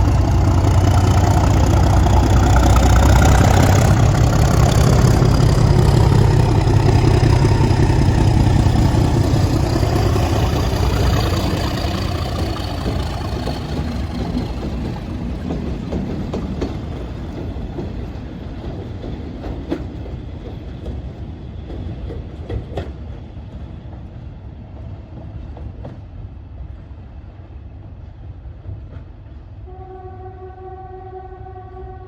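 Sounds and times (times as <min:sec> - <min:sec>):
diesel locomotive rumbling: 0:00.0 - 0:32.0
two-tone locomotive horn: 0:29.6 - 0:32.0.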